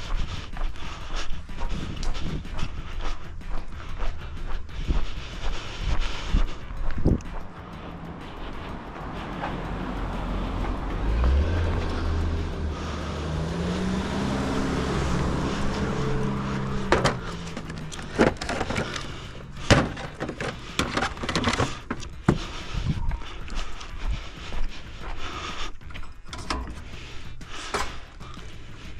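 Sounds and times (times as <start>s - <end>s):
engine running: 0.0s - 28.9s
sharp knocks and clatters: 16.8s - 22.5s.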